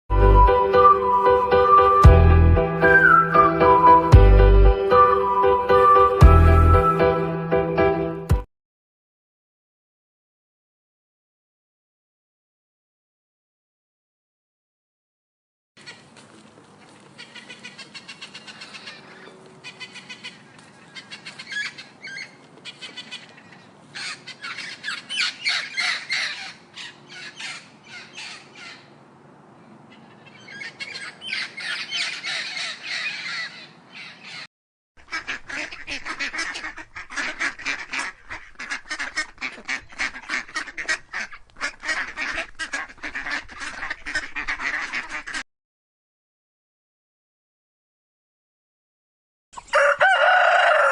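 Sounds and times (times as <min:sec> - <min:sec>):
flock with dense low calls: 0:00.2 - 0:04.1
birds calling in rapid bursts: 0:15.8 - 0:29.0, 0:29.6 - 0:45.4.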